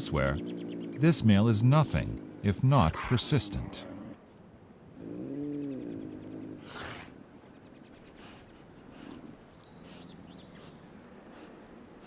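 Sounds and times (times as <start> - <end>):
mountain lion growling: 0.0 - 4.2, 4.9 - 12.0
crickets chirping: 0.0 - 12.0
mountain lion hissing: 5.0 - 12.0.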